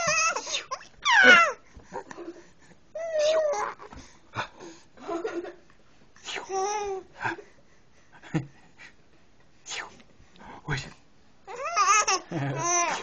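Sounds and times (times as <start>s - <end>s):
baby babbling: 3.0s - 3.9s, 11.5s - 13.0s.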